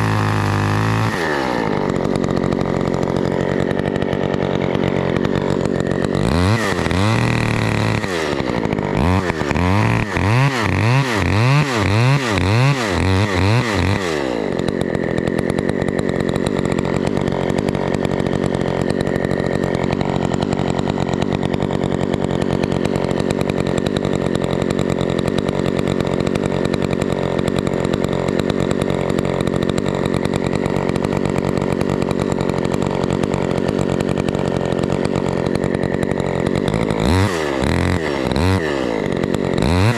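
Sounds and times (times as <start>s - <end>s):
chainsaw engine revving and idling: 0.0s - 39.9s.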